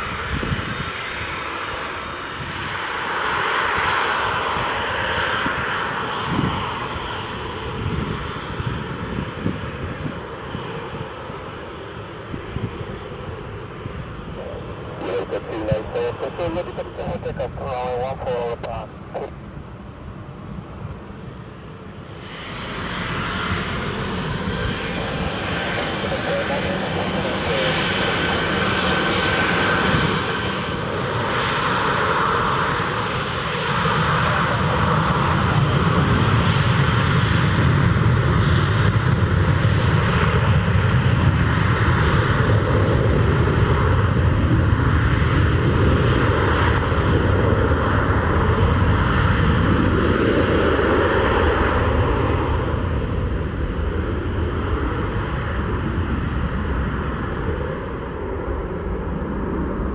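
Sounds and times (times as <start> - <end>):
high turbine whine: 0.0 - 39.6
airliner engines running: 0.0 - 59.9.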